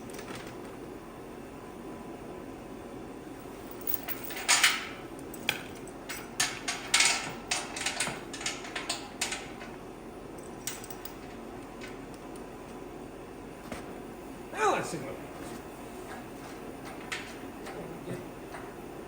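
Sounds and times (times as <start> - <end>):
metal chain clanking and rattling: 3.8 - 9.8, 10.4 - 12.0.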